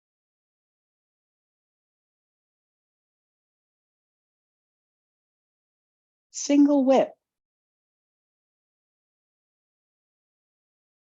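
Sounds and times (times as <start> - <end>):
person speaking: 6.4 - 7.1.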